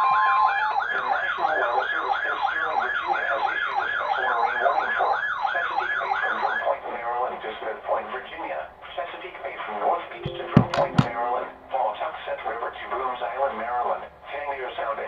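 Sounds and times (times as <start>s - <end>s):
steady alert tone: 10.2s - 12.0s.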